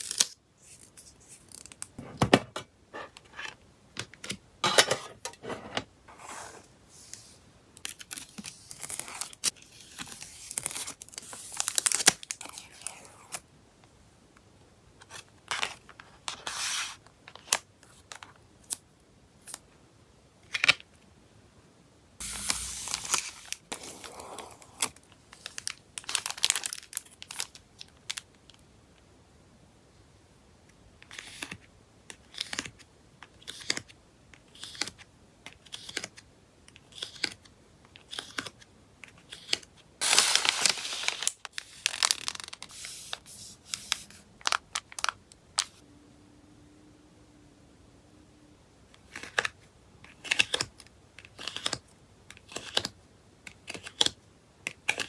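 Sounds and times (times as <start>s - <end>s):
plastic sleeves crinkling: 22.2s - 27.6s, 40.0s - 45.8s.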